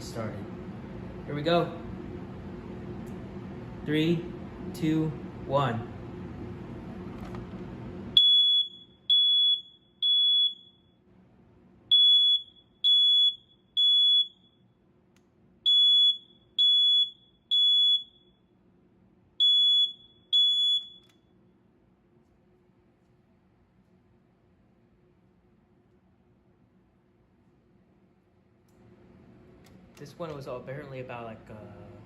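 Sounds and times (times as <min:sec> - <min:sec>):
smoke alarm beeping: 0:08.2 - 0:11.0, 0:11.9 - 0:14.8, 0:15.6 - 0:18.5, 0:19.4 - 0:21.3.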